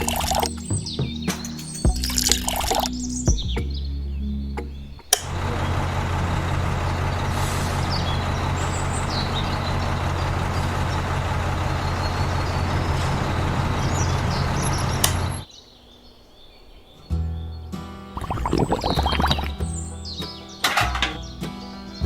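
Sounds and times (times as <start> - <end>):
engine running with low hum: 2.0 - 15.5.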